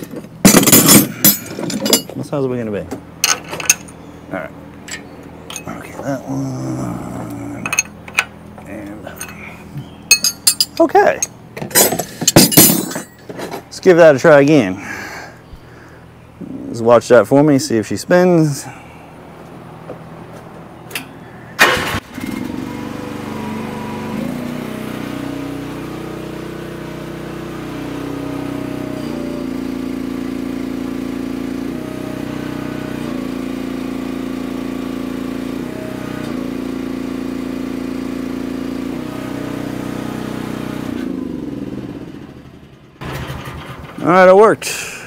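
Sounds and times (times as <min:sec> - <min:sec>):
excavator engine running: 0:18.9 - 0:45.0.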